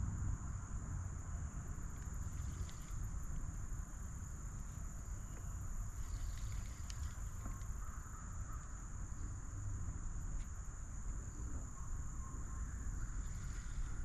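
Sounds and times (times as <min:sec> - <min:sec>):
insects chirring: 0:00.0 - 0:14.0.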